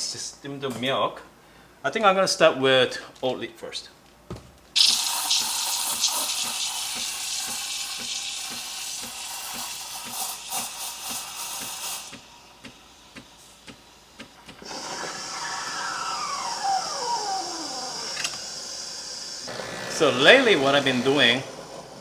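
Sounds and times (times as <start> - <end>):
steam wand hissing: 4.8 - 22.0.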